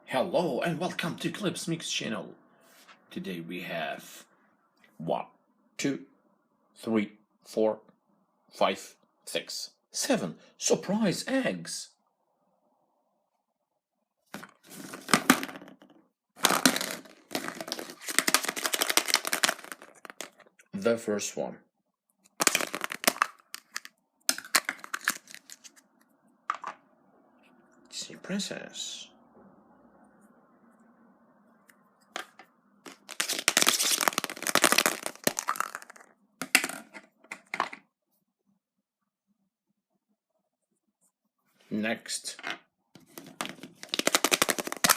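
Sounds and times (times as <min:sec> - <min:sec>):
chocolate cracking: 0:16.4 - 0:20.6, 0:22.3 - 0:25.8, 0:32.9 - 0:36.7, 0:43.2 - 0:44.9
foil crinkling: 0:16.5 - 0:20.4, 0:22.4 - 0:25.7, 0:32.9 - 0:35.9, 0:43.4 - 0:44.9
chocolate snapping: 0:32.9 - 0:36.6, 0:43.8 - 0:44.9.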